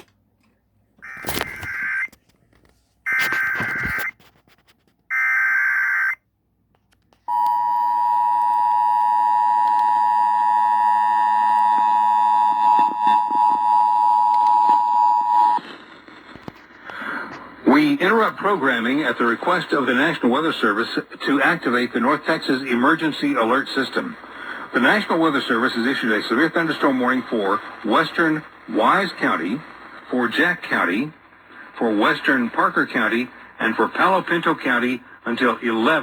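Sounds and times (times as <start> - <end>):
two-tone attention signal: 7.3 - 15.6.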